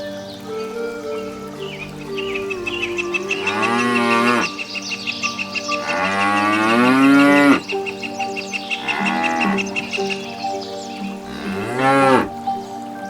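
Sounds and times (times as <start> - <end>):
cow mooing: 3.3 - 4.5, 5.8 - 7.6, 8.8 - 9.7, 11.3 - 12.4.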